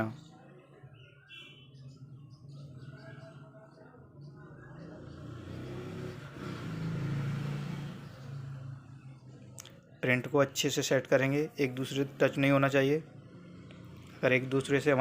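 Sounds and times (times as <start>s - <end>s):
vehicle engine passing by: 4.3s - 9.6s, 11.9s - 15.0s.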